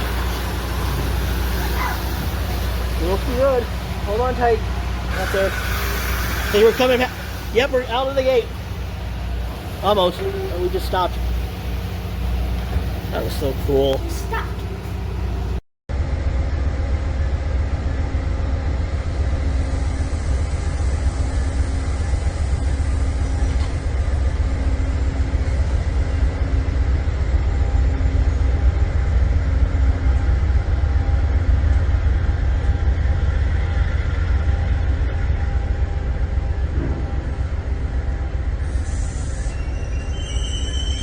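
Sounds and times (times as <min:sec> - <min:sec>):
train engine rumbling: 0:00.0 - 0:41.0.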